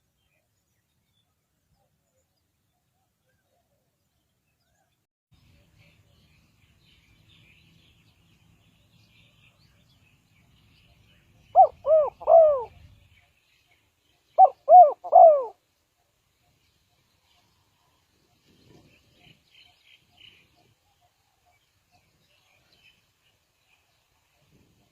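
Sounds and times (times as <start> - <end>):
dove cooing: 11.5 - 13.0, 14.4 - 15.6.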